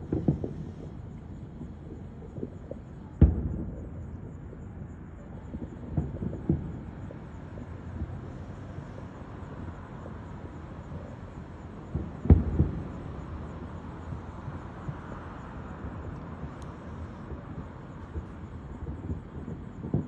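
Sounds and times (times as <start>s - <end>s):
firework shells booming: 0.0s - 1.0s, 2.6s - 4.2s, 11.1s - 15.2s
outdoor background hum: 0.0s - 20.0s.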